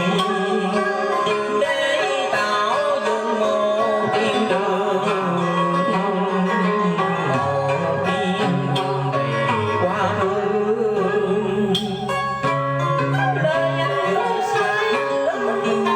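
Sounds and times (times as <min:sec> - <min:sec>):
plucked string melody: 0:00.0 - 0:15.9
steady bass line: 0:07.4 - 0:13.2.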